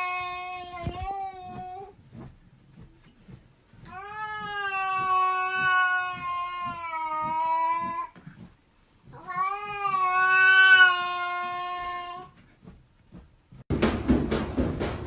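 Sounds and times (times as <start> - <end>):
cat yowling: 3.9 - 8.1, 9.1 - 12.3.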